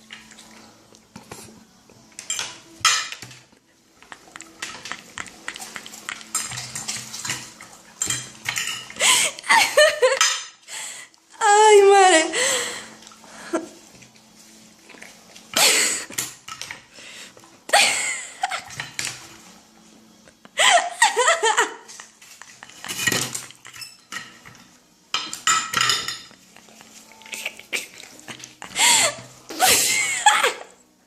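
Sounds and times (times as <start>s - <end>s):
plates and cutlery clattering: 2.2s - 9.0s, 9.8s - 10.6s, 15.5s - 16.9s, 18.6s - 19.4s, 22.0s - 29.2s.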